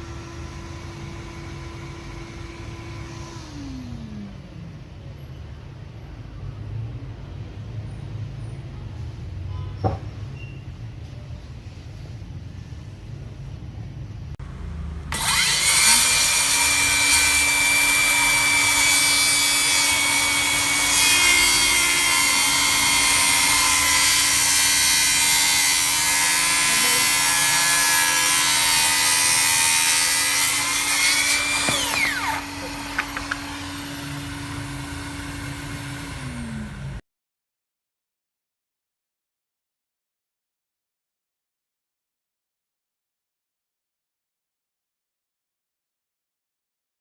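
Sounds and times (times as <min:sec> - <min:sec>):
circular saw cutting wood: 0:00.0 - 0:04.4, 0:15.1 - 0:37.0
vacuum humming: 0:00.0 - 0:04.6, 0:15.1 - 0:37.0.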